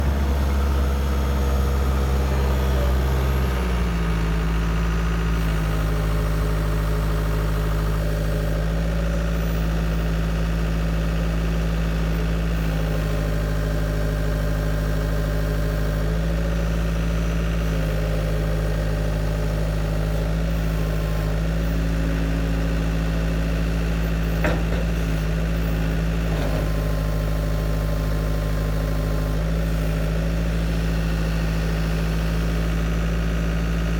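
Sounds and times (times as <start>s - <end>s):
diesel engine running: 0.0s - 33.9s
brief knock: 24.4s - 25.0s.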